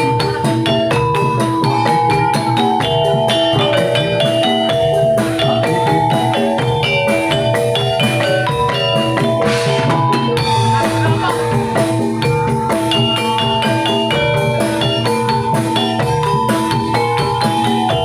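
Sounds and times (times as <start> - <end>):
metal mallet instruments ringing: 0.0 - 18.0
steady drum beat: 0.0 - 18.0.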